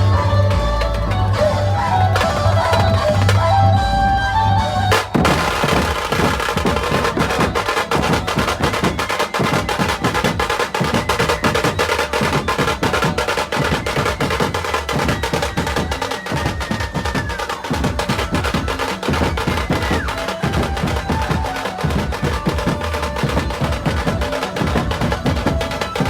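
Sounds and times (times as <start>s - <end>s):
drum-heavy music: 0.0s - 26.0s.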